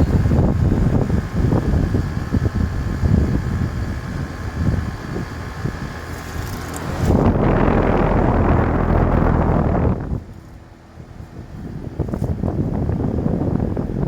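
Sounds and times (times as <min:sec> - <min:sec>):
faint steady whine: 0:00.0 - 0:14.0
heat pump humming: 0:00.0 - 0:14.0
wind rumble on microphone: 0:00.0 - 0:14.0.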